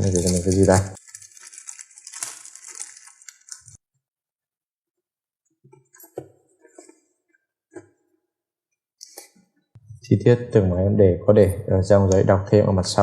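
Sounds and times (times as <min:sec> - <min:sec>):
parcel packaging rustling: 0:00.0 - 0:03.8.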